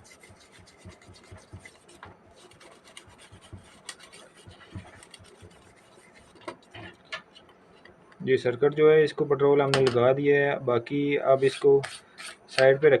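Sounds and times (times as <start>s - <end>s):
brush scratching circuit board: 0.0s - 7.9s.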